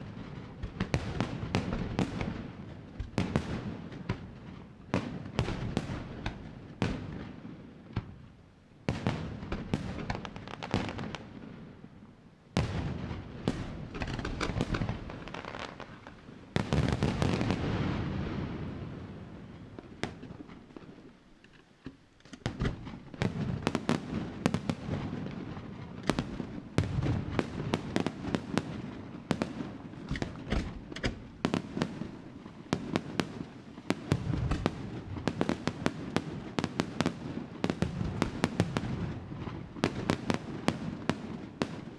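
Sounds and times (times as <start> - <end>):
fireworks bursting: 0.0 - 21.2, 22.2 - 41.9
fireworks crackling: 0.0 - 21.6, 22.2 - 41.9.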